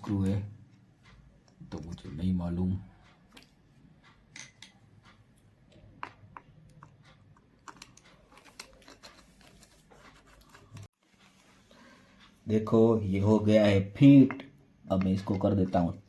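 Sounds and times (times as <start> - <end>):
small parts and screws clicking: 4.0 - 10.9.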